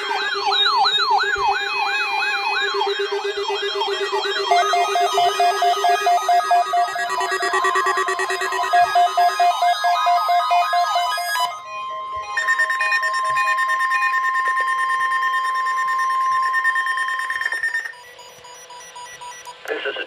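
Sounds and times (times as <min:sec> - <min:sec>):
electronic warbling alert tones: 0:00.0 - 0:14.4
steady alarm tone: 0:00.0 - 0:19.7.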